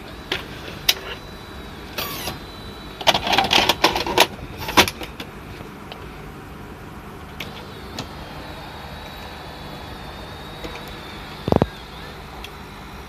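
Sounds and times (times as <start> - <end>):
video cassette recorder clicks: 10.6 - 11.8.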